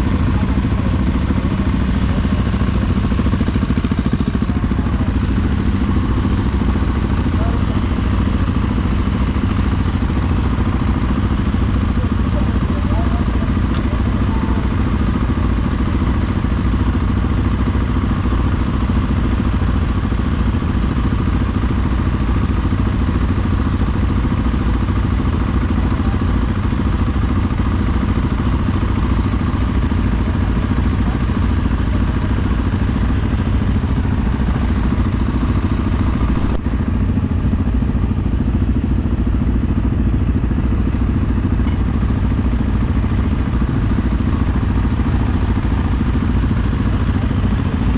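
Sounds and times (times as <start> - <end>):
road noise: 0.0 - 16.7, 25.4 - 47.9
vehicle engine droning: 0.0 - 47.9.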